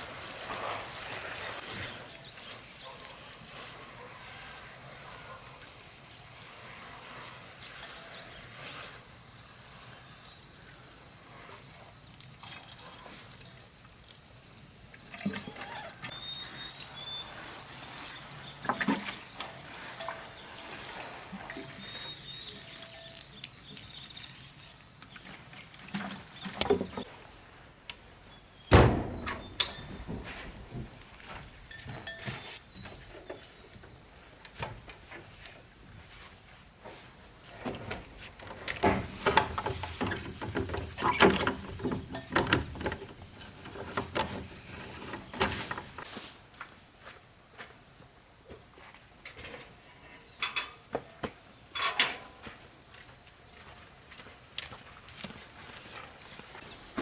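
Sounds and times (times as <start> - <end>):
insects chirping: 0.0 - 57.0
clattering knocks: 28.7 - 31.0.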